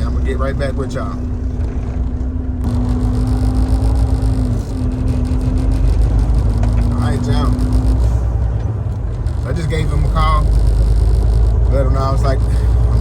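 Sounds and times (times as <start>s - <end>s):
truck engine and road rumble: 0.0s - 13.0s.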